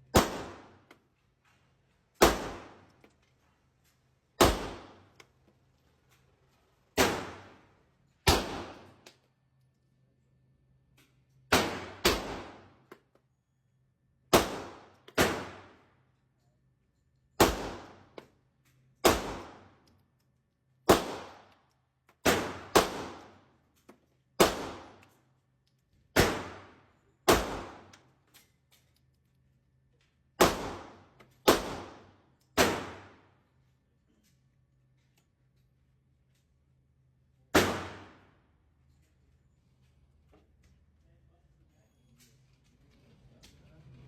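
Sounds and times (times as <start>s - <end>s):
echoing gunshots: 0.1s - 0.8s, 2.2s - 2.8s, 4.4s - 5.1s, 7.0s - 7.6s, 8.3s - 9.0s, 11.5s - 12.7s, 14.3s - 15.8s, 17.4s - 18.0s, 19.0s - 19.7s, 20.9s - 21.5s, 22.2s - 23.4s, 24.4s - 25.0s, 26.2s - 27.9s, 30.4s - 33.2s, 37.5s - 38.3s.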